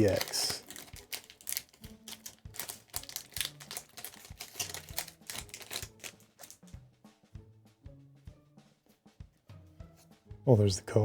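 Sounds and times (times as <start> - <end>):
foil pack tearing and crinkling: 0.0 - 6.7
cards being handled: 0.0 - 6.8.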